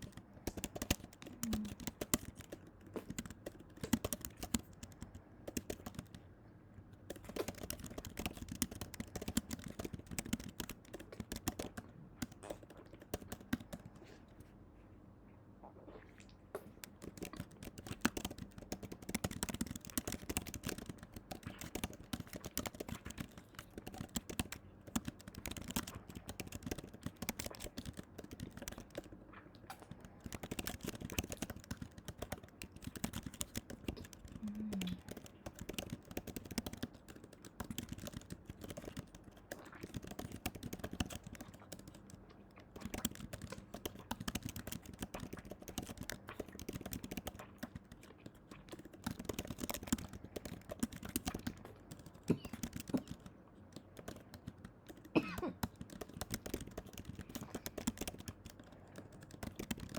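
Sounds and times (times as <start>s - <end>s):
dense irregular clicking and crackling: 16.8s - 59.9s.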